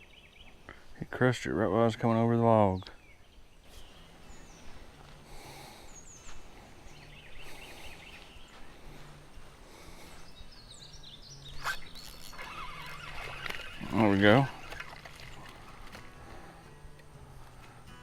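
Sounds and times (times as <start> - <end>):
faint bird chirps: 10.0 - 15.5.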